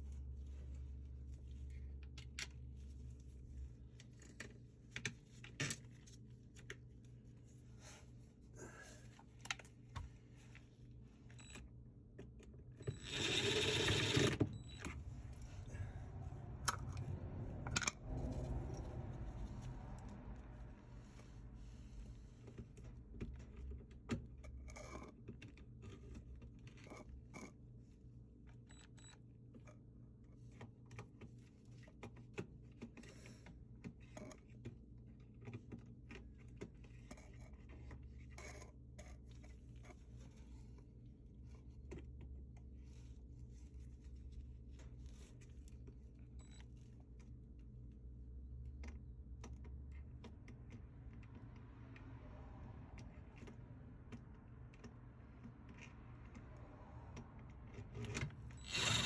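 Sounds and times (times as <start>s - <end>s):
steady low hum: 14.5s - 23.0s.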